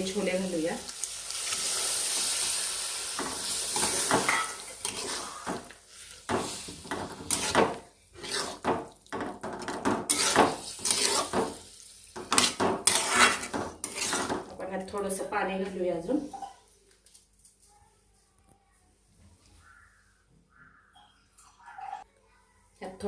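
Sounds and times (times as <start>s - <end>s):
chickpeas sizzling in pan: 0.0s - 15.2s
spoon scraping against pan: 3.2s - 14.5s.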